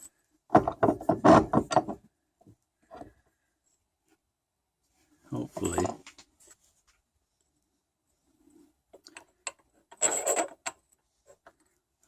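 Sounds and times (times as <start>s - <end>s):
metal parts scraping: 9.9s - 10.8s.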